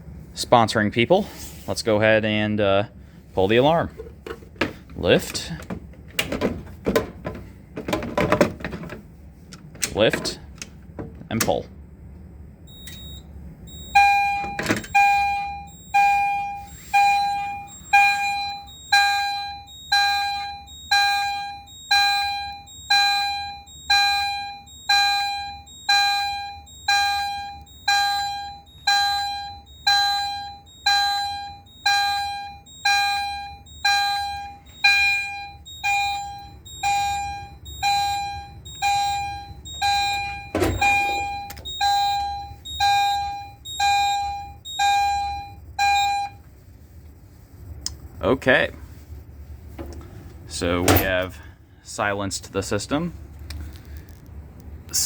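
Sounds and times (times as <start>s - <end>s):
alarm chime strikes: 12.7s - 46.3s.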